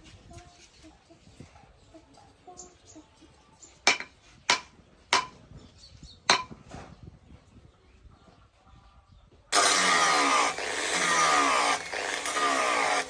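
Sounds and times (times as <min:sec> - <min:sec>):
hammer blows on steel: 0:03.9 - 0:05.4, 0:06.3 - 0:06.6.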